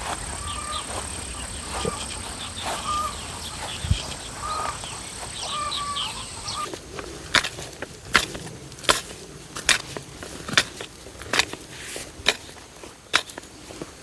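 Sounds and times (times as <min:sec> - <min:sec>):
high bird chirps: 0:00.0 - 0:06.7
short bird calls: 0:00.0 - 0:06.7
sharp crunching clicks: 0:06.6 - 0:14.0.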